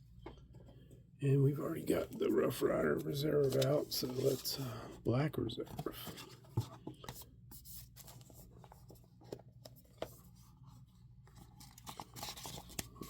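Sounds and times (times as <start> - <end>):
packaging rustling: 11.3 - 13.0.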